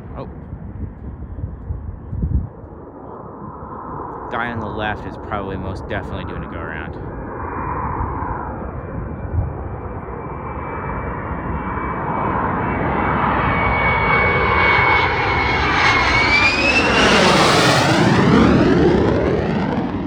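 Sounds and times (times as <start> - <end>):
fighter jet engine whine: 0.4 - 20.0.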